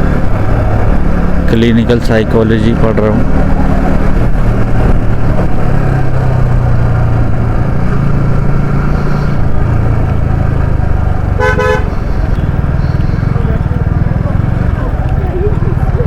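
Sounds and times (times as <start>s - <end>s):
motorcycle engine running: 0.0s - 16.0s
road and wind noise: 0.0s - 16.0s
vehicle horn beeps: 11.4s - 12.5s.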